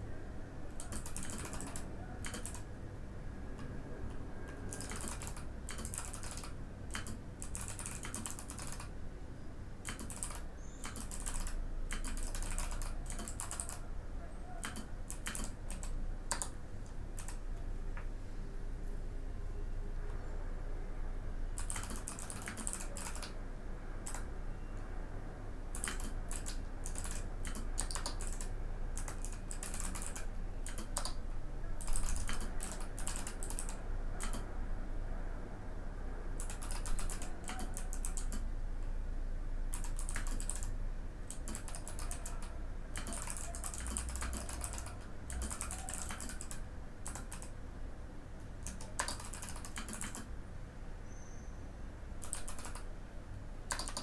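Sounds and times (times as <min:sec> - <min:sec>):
faint low hum: 0:00.0 - 0:54.0
mechanical keyboard typing: 0:00.7 - 0:02.7, 0:03.6 - 0:09.0, 0:09.8 - 0:13.8, 0:14.6 - 0:17.6, 0:21.6 - 0:23.4, 0:24.0 - 0:24.3, 0:25.7 - 0:31.2, 0:31.8 - 0:34.5, 0:36.4 - 0:38.5, 0:39.7 - 0:47.6, 0:48.6 - 0:50.3, 0:52.2 - 0:52.9, 0:53.7 - 0:54.0.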